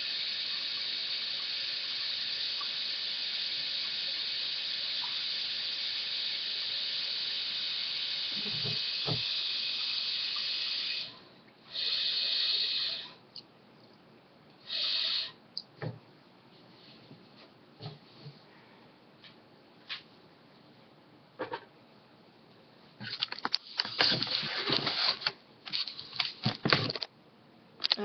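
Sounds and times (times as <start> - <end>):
tap water filling container: 8.5 - 9.4.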